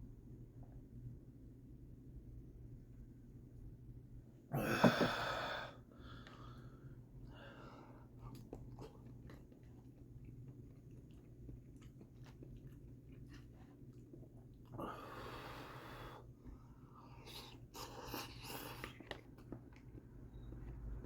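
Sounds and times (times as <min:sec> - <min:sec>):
person chewing soft food: 0:07.9 - 0:15.6, 0:16.2 - 0:21.0.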